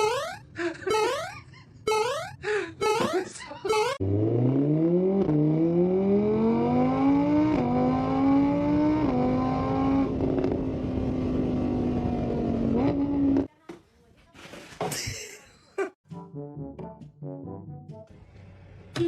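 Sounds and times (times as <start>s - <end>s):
car engine accelerating: 4.0s - 13.5s.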